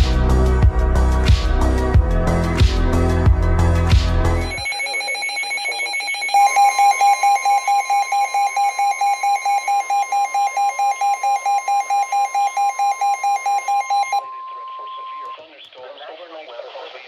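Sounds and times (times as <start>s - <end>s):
fast beeping alarm: 4.4s - 15.4s
steady high alert tone: 4.4s - 15.4s.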